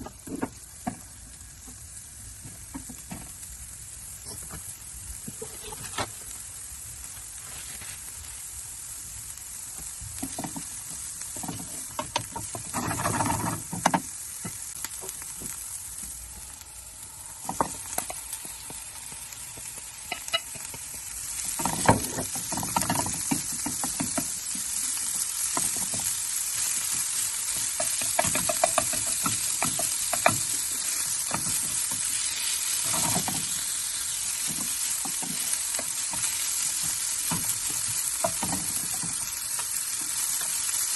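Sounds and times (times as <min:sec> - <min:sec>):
food sizzling in a frying pan: 0:00.0 - 0:40.9
spoon stirring and scraping: 0:27.6 - 0:31.8.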